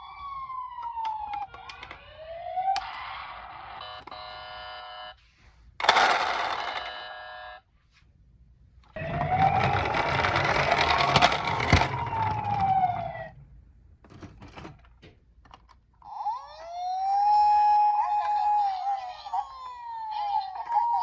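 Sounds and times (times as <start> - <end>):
toy electronic siren wailing: 9.0 - 13.4, 16.0 - 21.0.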